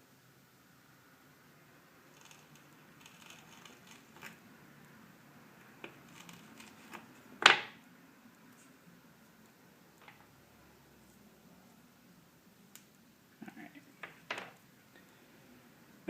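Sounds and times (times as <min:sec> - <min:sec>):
tools and wires handled on workbench: 0:02.1 - 0:04.4, 0:05.6 - 0:07.8, 0:10.0 - 0:10.4.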